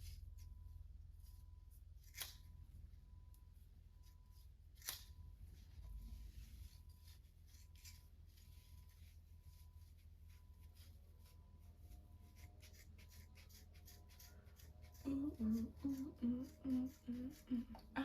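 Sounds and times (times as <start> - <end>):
scissors snipping: 2.0 - 2.5, 4.8 - 5.2.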